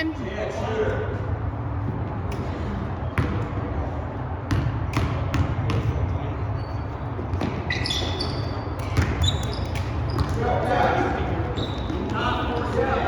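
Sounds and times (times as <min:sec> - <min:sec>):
gym background noise: 0:00.0 - 0:04.5
basketball bouncing on gym floor: 0:03.1 - 0:03.6, 0:04.5 - 0:06.1, 0:07.2 - 0:10.6.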